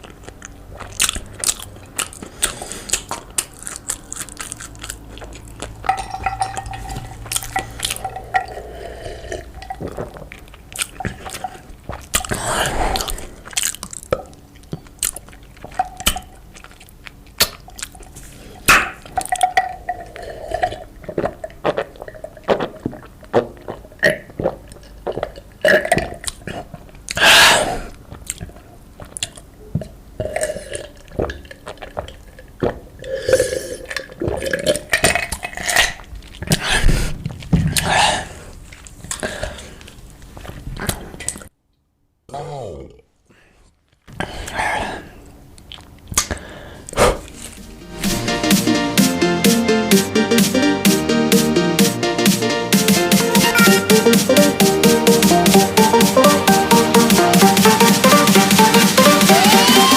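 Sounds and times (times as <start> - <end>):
chewing with wet mouth clicks: 0.0 - 8.5, 9.6 - 12.4, 13.0 - 18.2, 45.6 - 46.4
longer noisy eating sounds: 0.0 - 41.5, 42.3 - 47.8.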